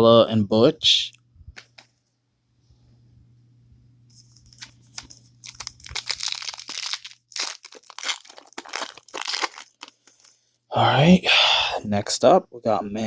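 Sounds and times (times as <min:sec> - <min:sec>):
foil wrapper tearing and crinkling: 0:04.4 - 0:10.4.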